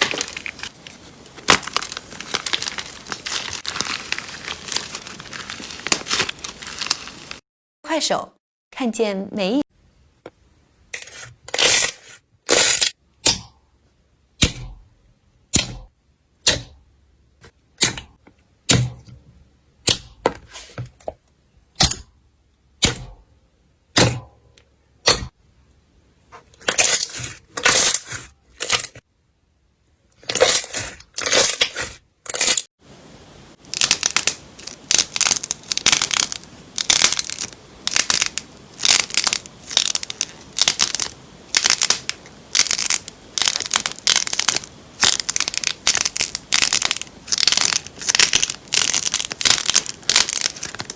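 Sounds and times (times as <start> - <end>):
slime crackling and crunching: 0.0 - 7.4, 33.6 - 50.9.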